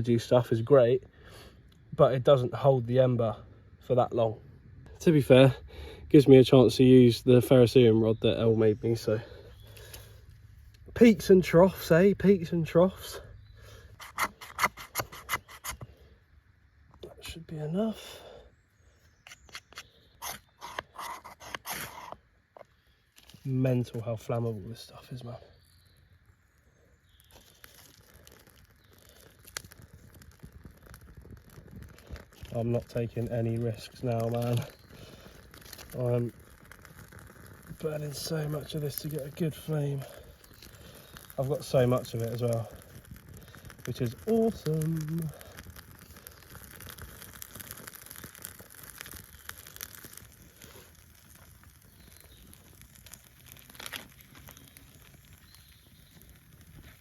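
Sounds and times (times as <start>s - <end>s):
tinder crackling: 0.0s - 57.0s
sharp wood crack: 14.0s - 15.9s, 40.1s - 57.0s.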